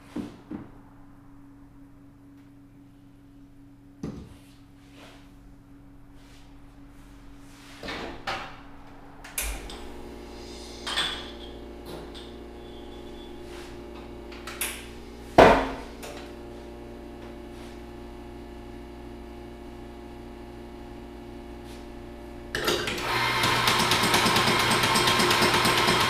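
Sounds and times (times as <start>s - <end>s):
espresso machine hum: 9.3s - 26.0s.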